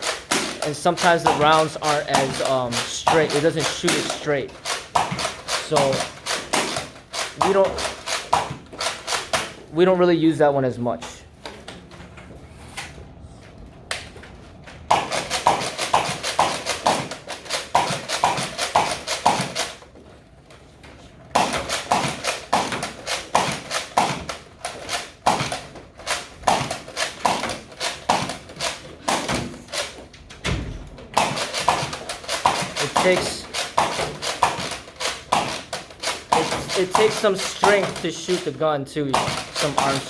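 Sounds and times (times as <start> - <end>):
toy blaster firing sharp pops: 0.0 - 9.5, 14.9 - 19.8, 21.4 - 29.9, 31.2 - 38.1.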